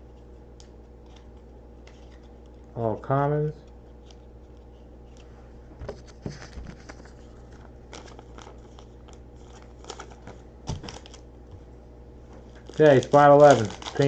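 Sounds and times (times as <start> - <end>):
faint steady hum: 0.0 - 14.0
trading cards rustling: 1.0 - 2.7, 6.0 - 11.3, 12.4 - 14.0.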